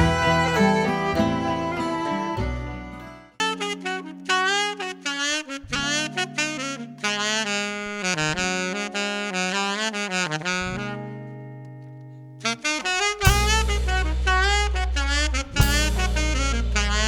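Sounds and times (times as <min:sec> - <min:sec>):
saxophone melody: 0:00.0 - 0:17.0
sustained low chords: 0:13.3 - 0:17.0.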